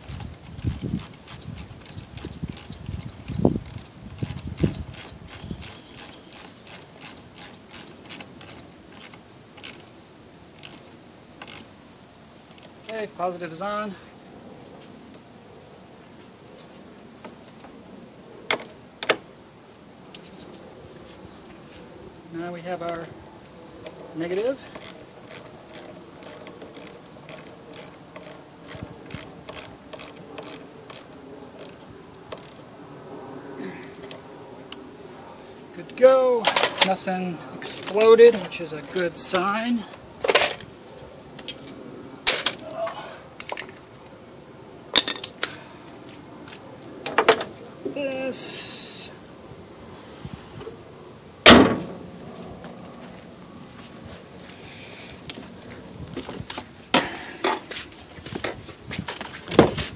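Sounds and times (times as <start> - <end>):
ratchet wrench clicking: 0.0 - 9.9, 10.6 - 10.8, 11.4 - 11.7, 24.6 - 32.6.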